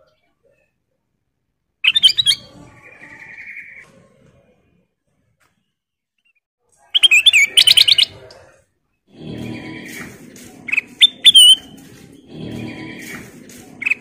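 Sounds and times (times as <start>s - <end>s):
bird chirping and whistling: 1.8s - 3.8s, 7.0s - 8.2s, 10.7s - 12.3s
low rumbling noise: 9.1s - 14.0s.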